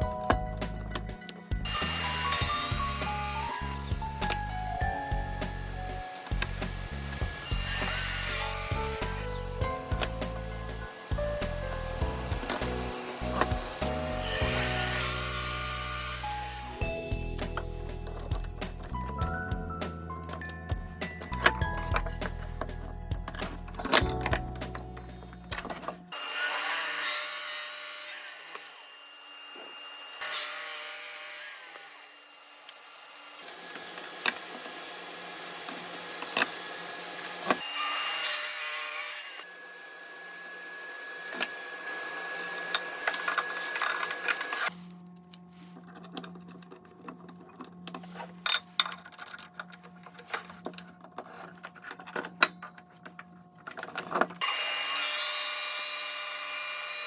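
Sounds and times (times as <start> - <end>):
power tools working wood: 1.3 - 19.0, 20.3 - 44.9, 53.1 - 57.0
steady motor hum: 2.4 - 16.4.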